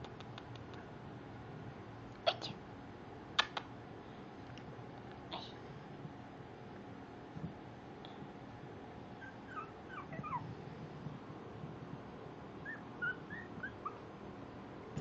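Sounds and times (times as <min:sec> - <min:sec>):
puppies whimpering: 0:09.2 - 0:10.5, 0:12.6 - 0:14.0.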